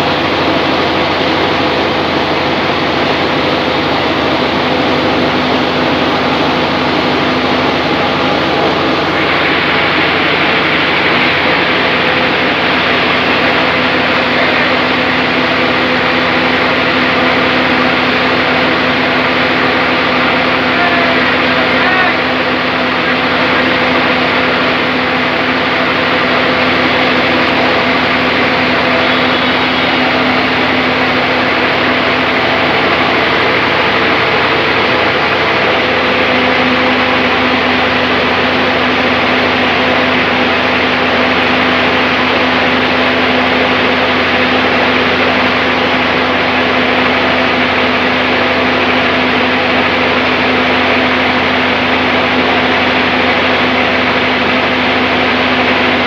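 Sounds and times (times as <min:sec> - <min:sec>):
band saw machine running: 0:00.0 - 0:56.0.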